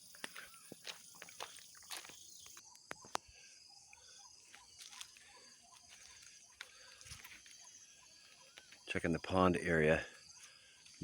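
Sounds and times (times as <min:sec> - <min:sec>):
insect chorus chirping: 0:00.0 - 0:11.0.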